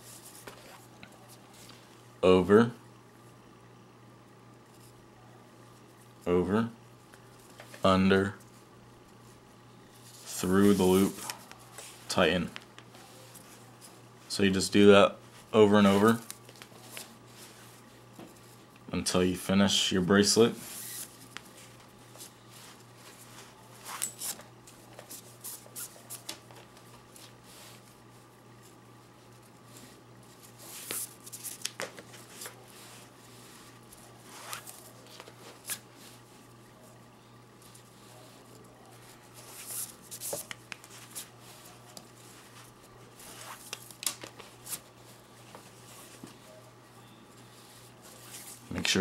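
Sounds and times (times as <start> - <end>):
steady low hum: 0.0 - 49.0
cord rustling and scraping: 20.5 - 28.0, 28.6 - 36.3, 37.6 - 46.6
cord rustling through fingers: 28.6 - 36.3.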